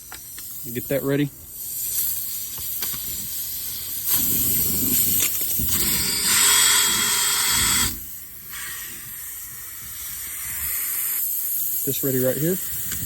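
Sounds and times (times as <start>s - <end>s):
background hiss: 0.0s - 13.0s
cordless drill whining: 5.8s - 8.0s.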